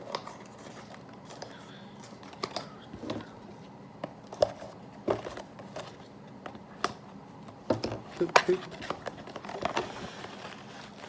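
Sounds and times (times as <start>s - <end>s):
packaging rustling: 8.0s - 11.0s.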